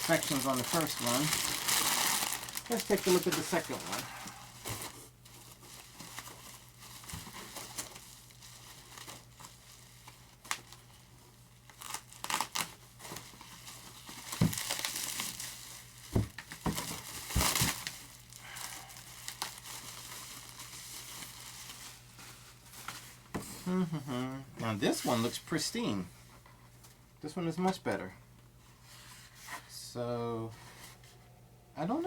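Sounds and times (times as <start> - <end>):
packaging wrap crinkling and tearing: 0.0 - 23.1.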